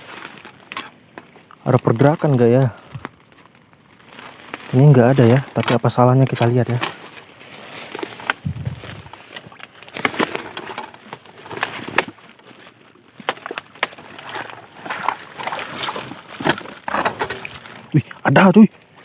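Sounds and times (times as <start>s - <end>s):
fish trap knocking and rustling: 7.8s - 12.6s, 13.2s - 17.8s.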